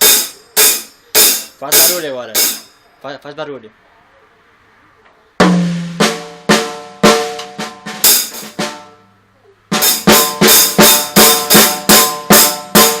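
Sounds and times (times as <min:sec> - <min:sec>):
child banging on drum kit: 0:00.0 - 0:02.8, 0:05.4 - 0:09.0, 0:09.7 - 0:13.0.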